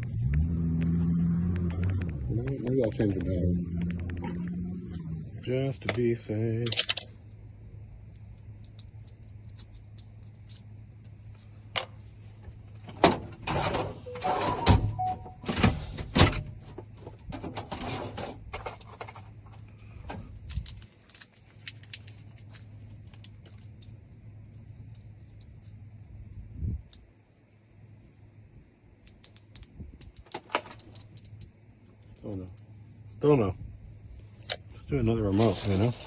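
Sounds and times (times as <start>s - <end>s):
low hum: 0.0s - 17.5s.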